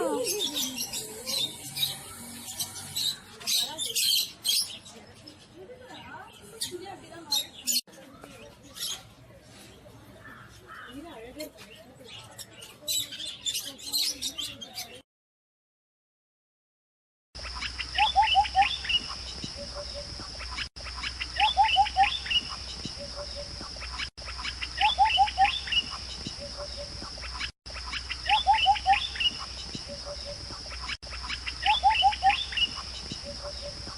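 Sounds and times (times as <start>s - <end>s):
birdsong phrase: 0.0s - 15.0s.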